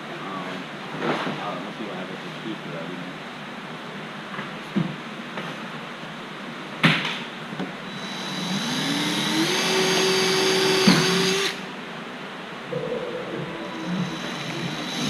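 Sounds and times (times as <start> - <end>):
power drill whining: 7.8 - 11.7, 13.7 - 15.0.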